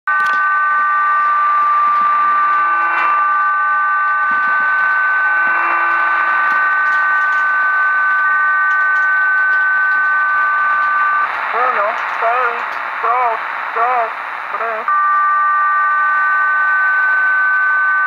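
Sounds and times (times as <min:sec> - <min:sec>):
faint static crackles: 0:00.1 - 0:18.0
two-note radio tone: 0:00.1 - 0:18.0
radio hiss: 0:09.7 - 0:15.0.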